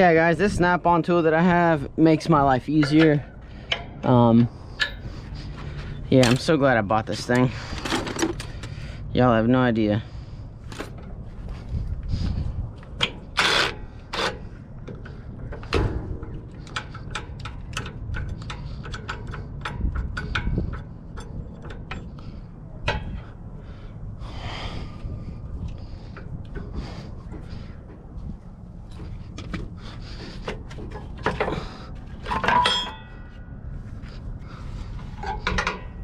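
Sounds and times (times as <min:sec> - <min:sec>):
hand tools clanking on metal: 0:02.2 - 0:08.8, 0:30.5 - 0:33.3.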